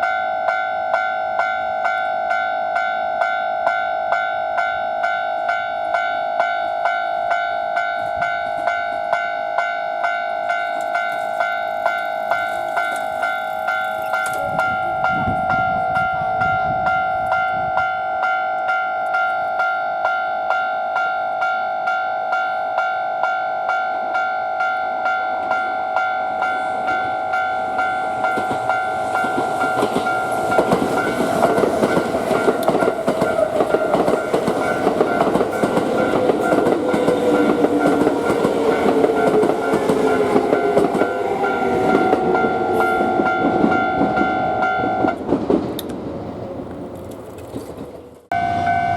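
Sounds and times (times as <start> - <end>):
level crossing alarm ringing: 0.0 - 45.2
train whine: 0.0 - 48.9
train wheels clattering on rails: 26.4 - 48.2.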